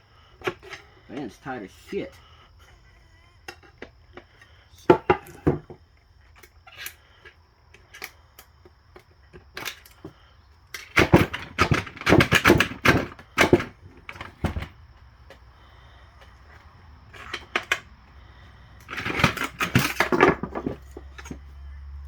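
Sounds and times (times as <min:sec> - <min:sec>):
metal-on-metal knocks and clinks: 0:10.7 - 0:14.7, 0:18.8 - 0:21.5.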